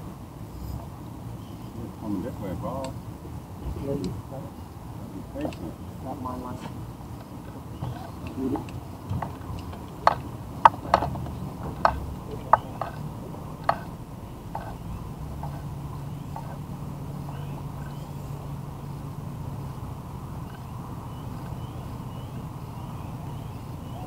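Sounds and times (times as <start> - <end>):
steady low hum: 0.0 - 24.0
sharp knocks: 7.8 - 16.7.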